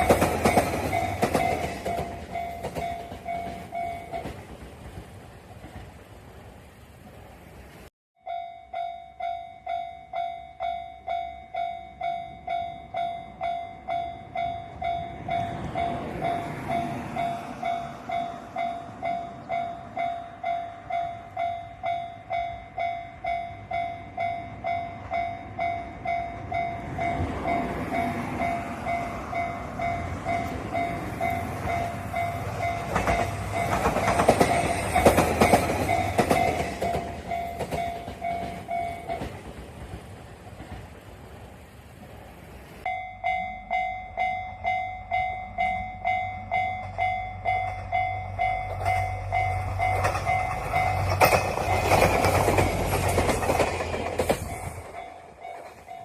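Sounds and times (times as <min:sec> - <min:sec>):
level-crossing alarm bell: 0:00.0 - 0:04.4, 0:08.2 - 0:39.3, 0:42.8 - 0:53.4, 0:54.4 - 0:56.0
train wheels clattering: 0:00.0 - 0:06.0, 0:25.2 - 0:41.1, 0:46.5 - 0:56.0
diesel railcar running: 0:00.0 - 0:56.0.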